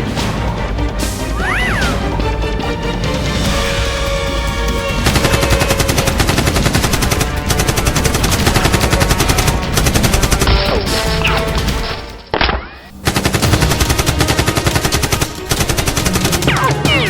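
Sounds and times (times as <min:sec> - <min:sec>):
rapid automatic gunfire: 0:04.8 - 0:11.2, 0:13.0 - 0:17.0.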